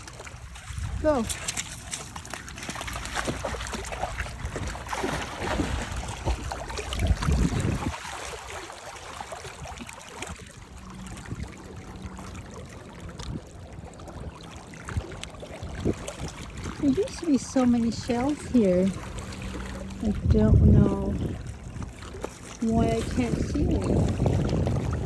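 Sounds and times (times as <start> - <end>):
dog splashing through water: 0.0 - 11.4, 14.8 - 25.0
water lapping: 0.0 - 25.0
low rumble: 17.4 - 25.0.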